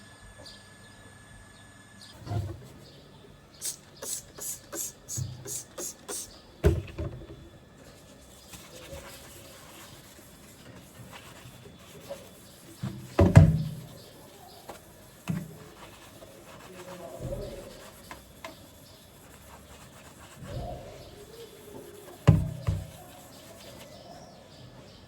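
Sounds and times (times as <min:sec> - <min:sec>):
short hissy strokes: 0:03.6 - 0:06.4.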